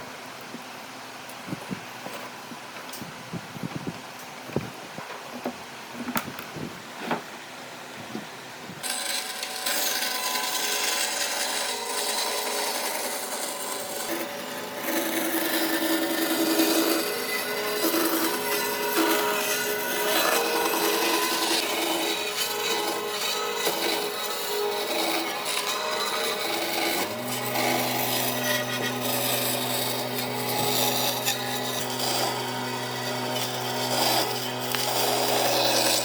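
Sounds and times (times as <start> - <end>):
power tool sanding wood: 8.8 - 36.0.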